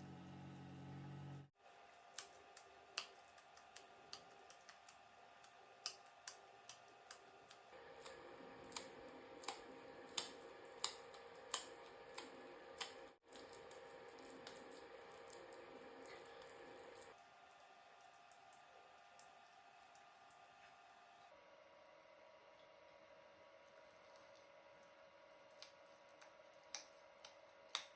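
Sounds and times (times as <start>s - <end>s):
sharp cutting clicks: 2.1s - 13.5s.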